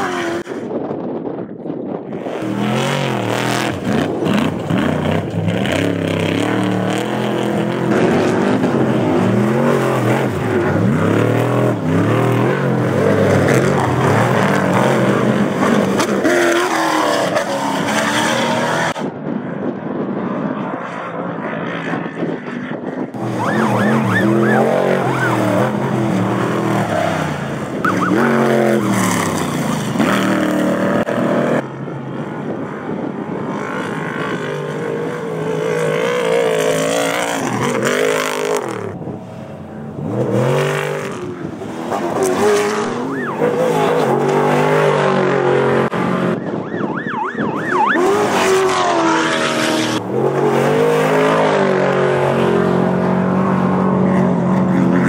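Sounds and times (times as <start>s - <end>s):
race vehicle engines revving: 0.0s - 0.7s, 2.1s - 19.2s, 20.2s - 55.0s.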